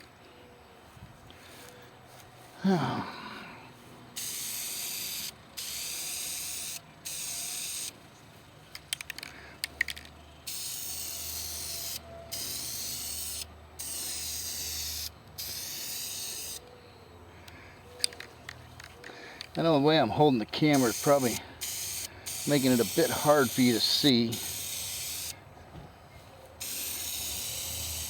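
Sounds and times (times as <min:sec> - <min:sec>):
spray can clicking rattle: 0:04.2 - 0:07.9, 0:08.8 - 0:16.6, 0:20.7 - 0:25.3, 0:26.6 - 0:28.0
spray paint can hissing: 0:04.2 - 0:07.9, 0:10.4 - 0:16.6, 0:20.6 - 0:25.4, 0:26.6 - 0:28.0.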